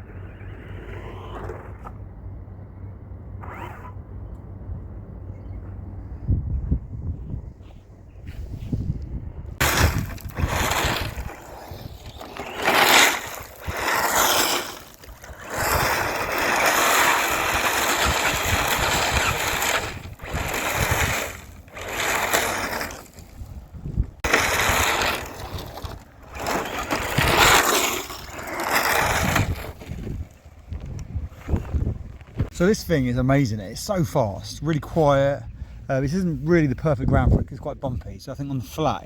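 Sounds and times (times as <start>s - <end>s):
electric motor whining: 9.6s - 23.3s, 24.2s - 30.0s
toy car rattling over ground: 9.6s - 32.8s.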